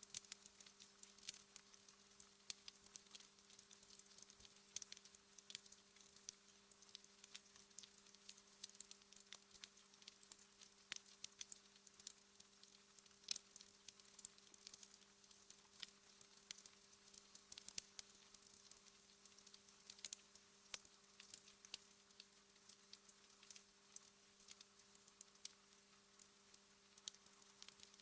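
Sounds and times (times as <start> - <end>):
faint steady hum: 0.0 - 28.0
wood fire crackling: 0.0 - 28.0.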